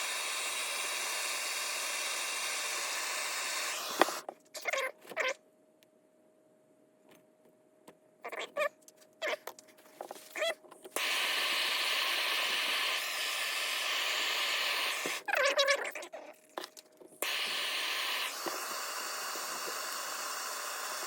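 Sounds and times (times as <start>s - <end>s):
gas torch hissing: 0.0s - 4.3s, 10.9s - 15.3s, 17.2s - 21.0s.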